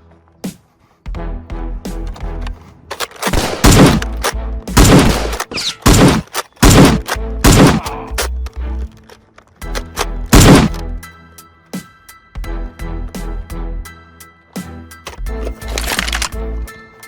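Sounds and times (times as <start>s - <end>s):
background music with a beat: 0.4s - 2.5s, 10.5s - 15.6s
gunshot sound effects: 3.3s - 4.0s, 4.8s - 7.9s, 10.3s - 10.8s.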